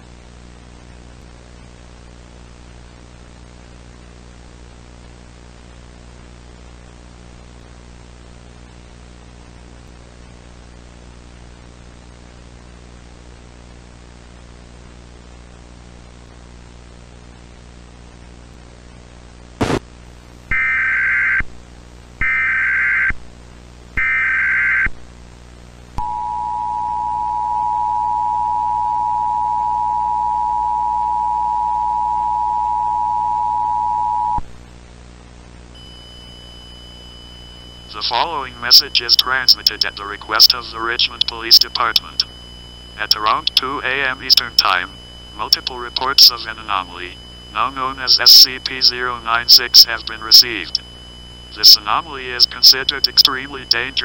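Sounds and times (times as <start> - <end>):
buzzing hum with hiss: 0.0 - 54.0
data tone bursts: 35.8 - 54.0.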